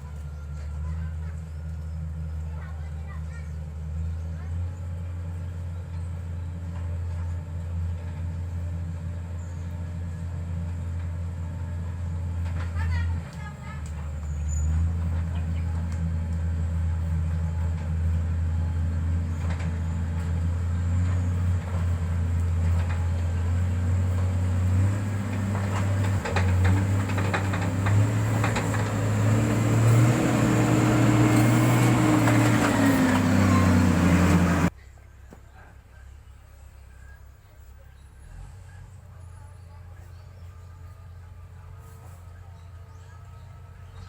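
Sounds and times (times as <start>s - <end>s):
heavy diesel engine running: 0.0s - 34.8s.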